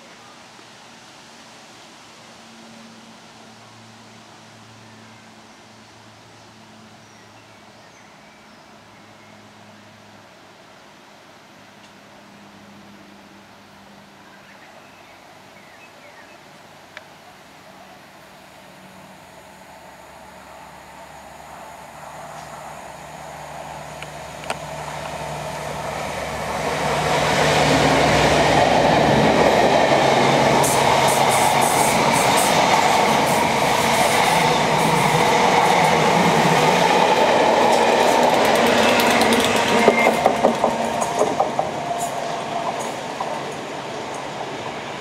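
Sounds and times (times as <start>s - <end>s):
train passing at speed: 18.1s - 45.0s
low engine hum: 18.5s - 31.0s
wheels clacking over rail joints: 23.9s - 44.8s.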